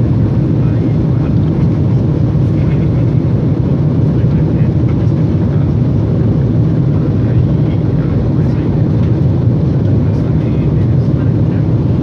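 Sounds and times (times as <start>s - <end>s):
airliner engines rumbling: 0.0s - 12.0s.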